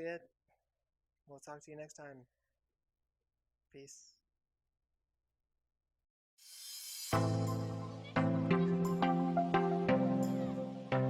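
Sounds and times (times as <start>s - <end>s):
rhythmic chords music: 7.1s - 11.0s.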